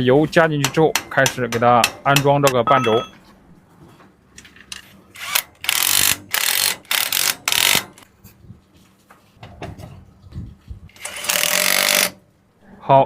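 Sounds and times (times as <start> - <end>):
ratchet wrench bursts: 5.2 - 8.0, 11.0 - 12.2.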